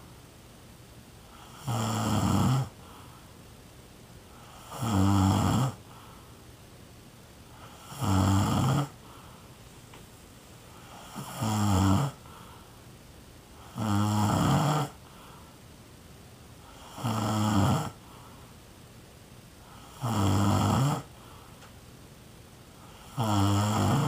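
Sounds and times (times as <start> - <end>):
person snoring: 1.4 - 2.7, 4.4 - 5.8, 7.6 - 9.0, 10.8 - 12.2, 13.7 - 15.0, 16.7 - 18.0, 19.8 - 21.1, 22.9 - 24.0.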